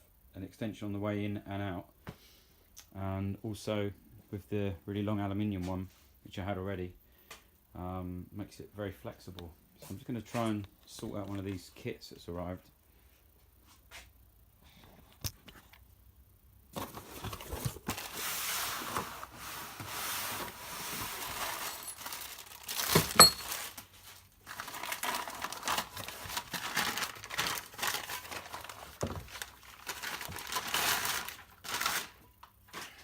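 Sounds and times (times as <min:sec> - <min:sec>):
packaging crumpled and torn: 0:21.1 - 0:33.0.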